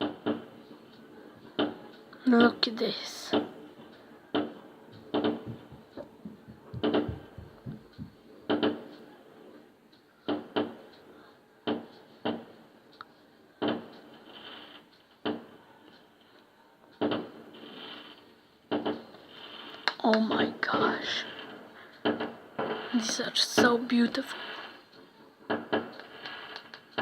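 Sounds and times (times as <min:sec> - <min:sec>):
fireworks bangs with echo: 0:04.3 - 0:08.9, 0:25.5 - 0:27.0
fireworks crackle: 0:04.4 - 0:09.0, 0:13.6 - 0:15.5, 0:17.0 - 0:27.0.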